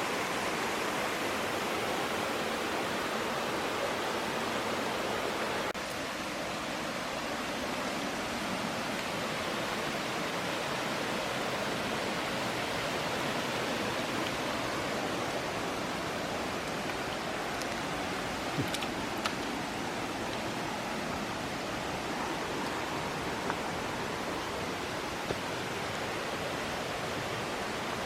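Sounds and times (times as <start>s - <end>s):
falling water rushing: 0.0s - 28.0s.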